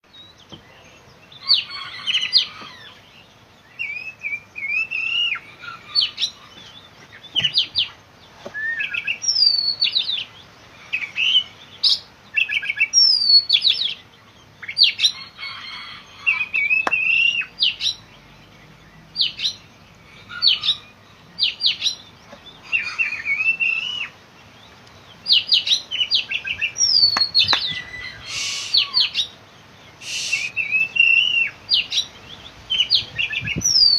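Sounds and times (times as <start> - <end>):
songbird singing whistled phrases: 3.7 - 6.4, 7.3 - 10.3, 11.0 - 14.0, 16.3 - 18.0, 20.3 - 24.2, 25.3 - 33.9.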